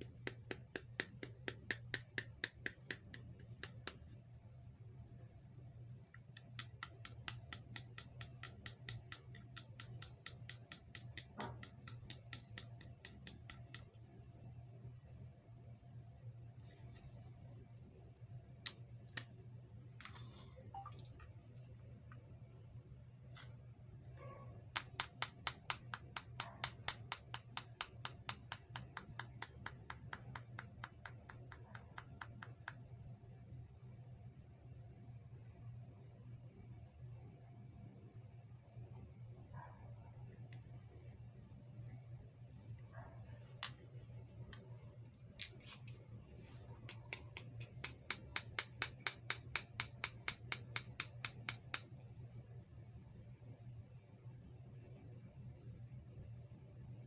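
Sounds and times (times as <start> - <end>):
evenly spaced sharp clicks: 0.0 - 4.2, 6.0 - 14.2, 24.7 - 33.0, 43.3 - 52.0
steady low hum: 0.0 - 57.0.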